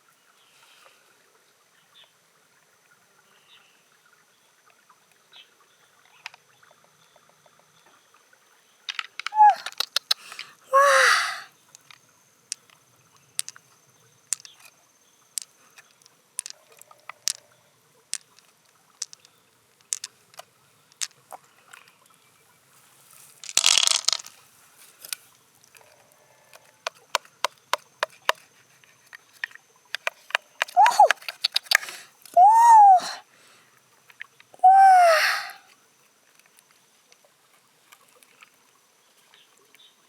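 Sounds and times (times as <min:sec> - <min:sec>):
shells clicking and tapping: 0:08.9 - 0:10.6, 0:11.7 - 0:12.8, 0:13.4 - 0:13.7, 0:14.3 - 0:14.7, 0:15.4 - 0:17.4, 0:18.1 - 0:21.2, 0:23.4 - 0:24.4, 0:26.9 - 0:28.4, 0:29.1 - 0:32.0.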